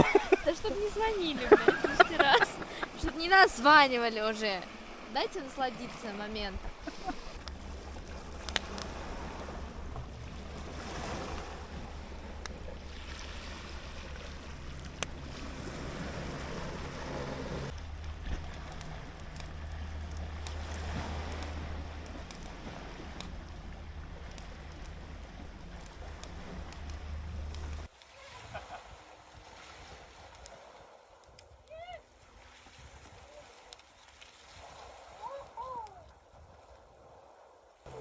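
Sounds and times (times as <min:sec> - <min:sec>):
wind buffeting microphone: 0:00.0 - 0:27.9
sea waves washing on shore: 0:00.0 - 0:38.0.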